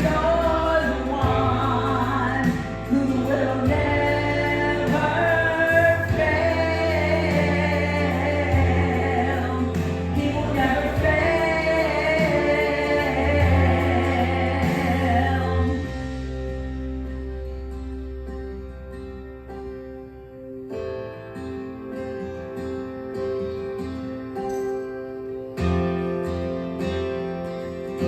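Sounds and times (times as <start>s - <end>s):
people singing gospel: 0.0s - 16.3s
recorded accompaniment with bass: 0.0s - 28.0s.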